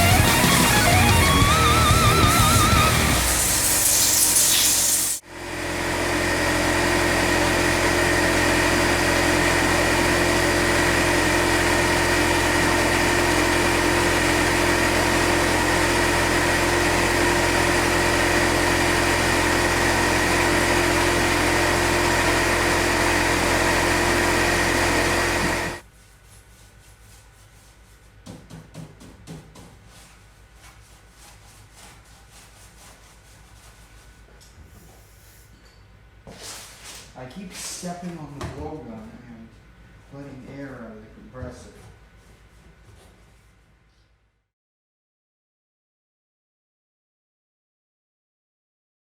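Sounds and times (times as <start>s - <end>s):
air compressor motor running: 0.0s - 25.8s
air hiss: 3.2s - 5.2s.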